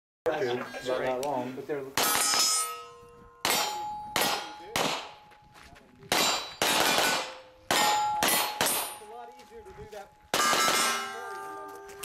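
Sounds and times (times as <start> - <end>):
steel targets ringing: 2.0 - 5.3, 6.1 - 9.2, 10.3 - 12.0
carbine gunshots: 3.4 - 5.2, 6.1 - 9.1, 10.3 - 11.3.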